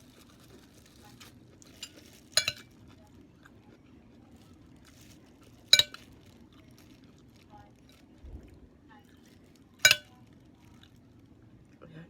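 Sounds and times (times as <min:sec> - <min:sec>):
utensils clinking against a dish: 0:01.6 - 0:03.0, 0:05.7 - 0:06.3, 0:09.8 - 0:10.2.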